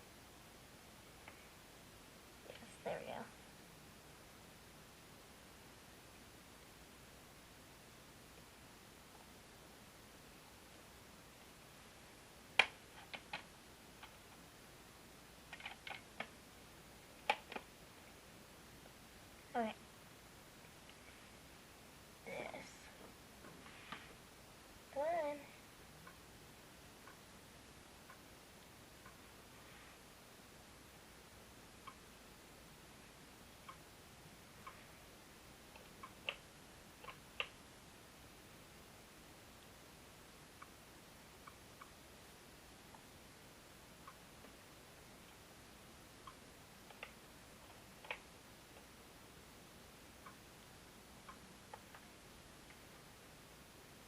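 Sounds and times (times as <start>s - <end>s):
faint clicks: 35.7s - 37.6s, 46.2s - 48.9s.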